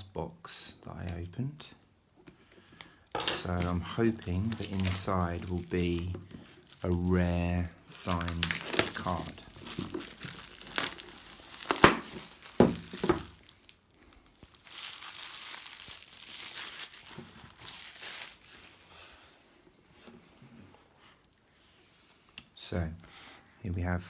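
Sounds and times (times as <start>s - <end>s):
wrapping torn and crinkled: 3.2s - 19.1s.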